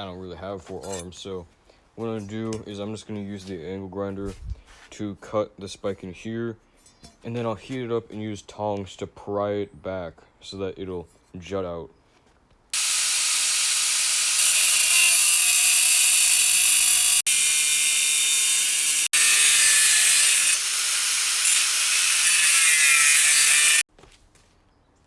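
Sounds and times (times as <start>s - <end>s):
angle grinder cutting steel: 12.8s - 23.9s.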